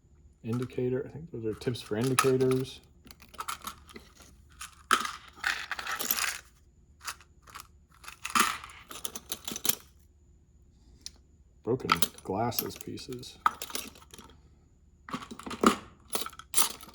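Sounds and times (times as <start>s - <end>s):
small tool parts clinking: 0.5s - 0.8s, 1.5s - 10.0s, 11.8s - 14.3s, 15.1s - 16.9s.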